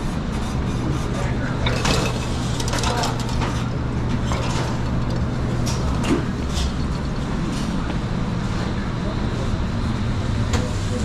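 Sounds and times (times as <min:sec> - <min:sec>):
kitchen equipment hum: 0:00.0 - 0:11.0
clicks and clatter: 0:01.6 - 0:06.7.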